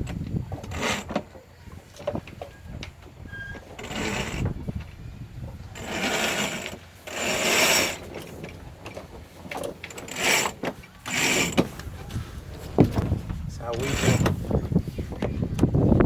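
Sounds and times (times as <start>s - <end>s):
sail noise: 0.0s - 16.0s
rope running through ratchet blocks: 0.5s - 1.2s, 3.8s - 4.5s, 5.7s - 8.4s, 9.9s - 11.7s.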